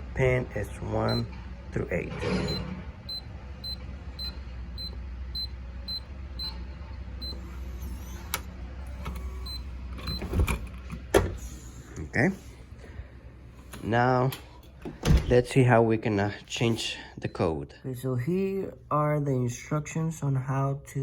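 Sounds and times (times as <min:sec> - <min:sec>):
keypad beeps: 0:02.4 - 0:06.6, 0:07.2 - 0:07.4, 0:09.4 - 0:10.3.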